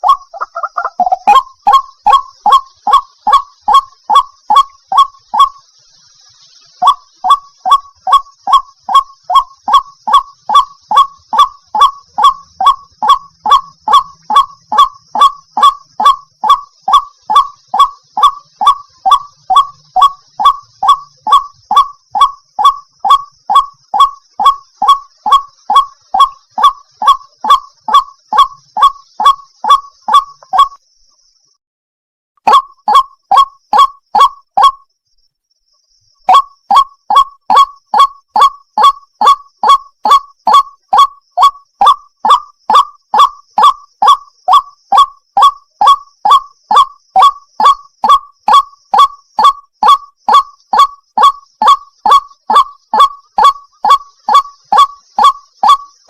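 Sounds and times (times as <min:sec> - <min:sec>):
bird repeating harsh call: 0:00.0 - 0:05.6, 0:06.5 - 0:30.8, 0:32.5 - 0:34.8
faint high hiss: 0:05.6 - 0:07.2.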